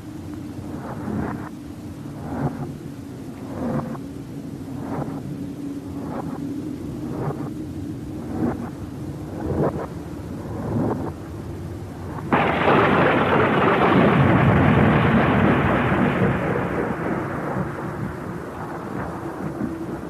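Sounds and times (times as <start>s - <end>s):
low thunder rumble: 0.0s - 20.0s
loud thunderclap: 12.3s - 20.0s.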